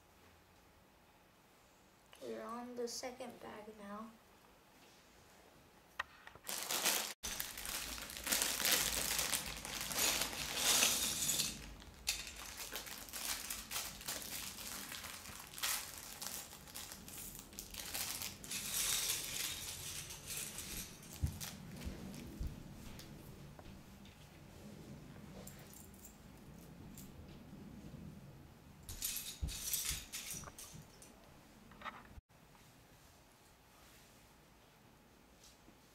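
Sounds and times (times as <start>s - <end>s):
plastic bag crinkling: 6.4s - 22.2s.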